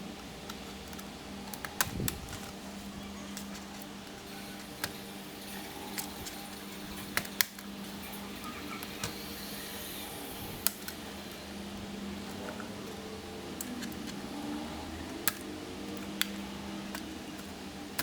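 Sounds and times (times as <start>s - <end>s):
steady low hum: 0.0s - 18.0s
sharp clicks and taps of parts: 0.2s - 2.6s, 7.0s - 7.7s, 15.0s - 18.0s.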